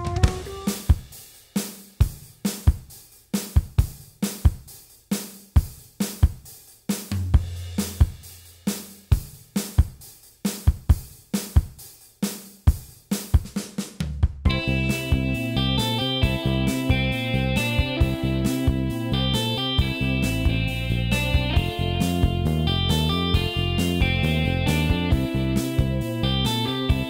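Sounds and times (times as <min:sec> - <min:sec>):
drum kit playing a beat: 0:00.0 - 0:27.0
low bass note: 0:14.5 - 0:26.4.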